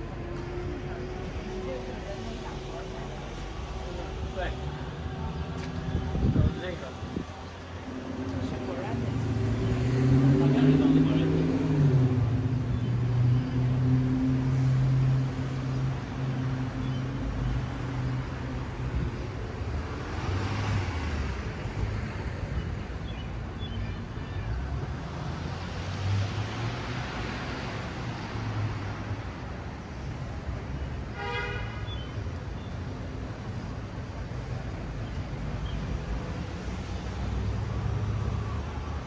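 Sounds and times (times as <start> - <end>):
low engine hum: 0.0 - 29.6
cars passing: 0.0 - 39.0
car horn toot: 31.2 - 32.0.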